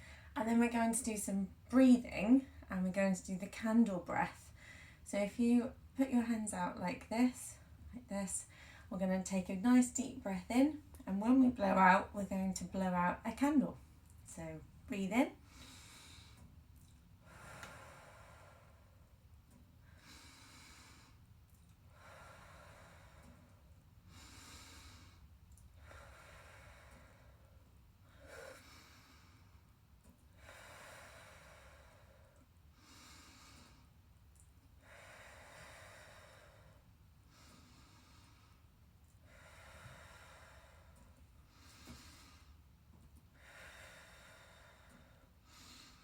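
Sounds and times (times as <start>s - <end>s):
slow deep breathing: 4.5s - 5.0s, 8.5s - 8.9s, 15.4s - 16.6s, 17.2s - 34.0s, 34.8s - 42.7s, 43.4s - 46.0s.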